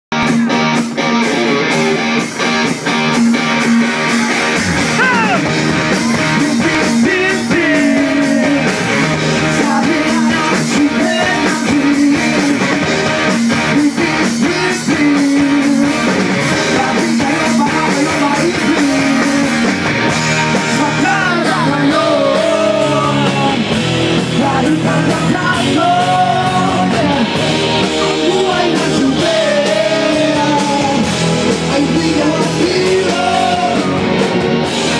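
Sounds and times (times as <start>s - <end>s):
rock music with guitar: 0.1s - 34.9s
person singing: 4.0s - 12.9s, 13.5s - 19.7s, 20.6s - 34.1s.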